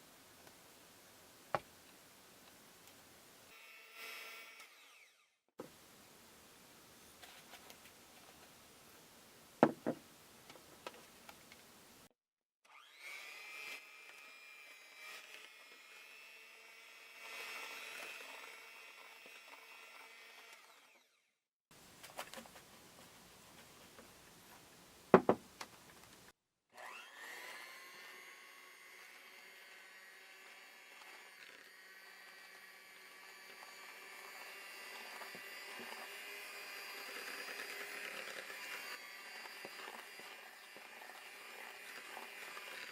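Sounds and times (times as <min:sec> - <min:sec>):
small appliance motor whining: 0:03.5 - 0:05.4, 0:12.7 - 0:21.3, 0:26.8 - 0:42.9
sharp knock: 0:25.2 - 0:25.4.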